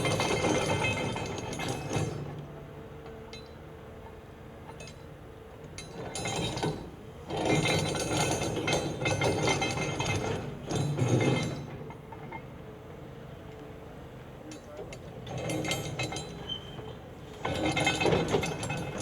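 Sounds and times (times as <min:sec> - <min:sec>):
excavator engine: 0:07.2 - 0:19.0.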